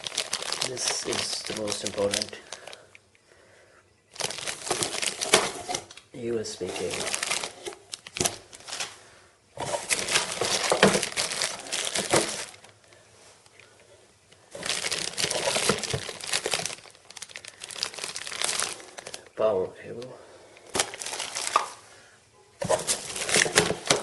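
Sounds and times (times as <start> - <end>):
plastic packaging crinkling: 0.0 - 3.0, 4.1 - 9.0, 9.6 - 13.7, 14.3 - 21.8, 22.6 - 24.0.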